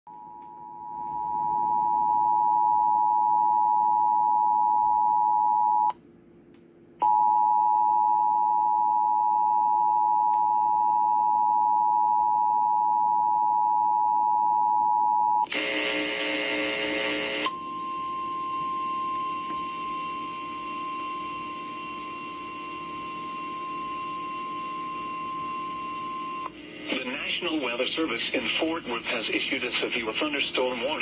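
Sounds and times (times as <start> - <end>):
two-tone alarm tone: 7.0 - 26.6.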